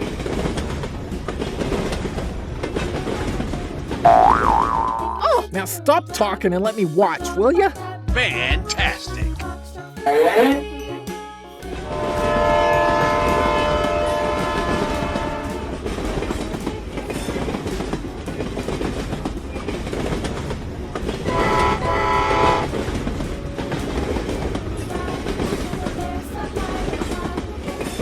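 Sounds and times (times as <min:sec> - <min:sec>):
train rumble and wheel clatter: 0:00.0 - 0:08.2, 0:11.1 - 0:28.0
train horn: 0:11.8 - 0:15.9, 0:21.3 - 0:22.8.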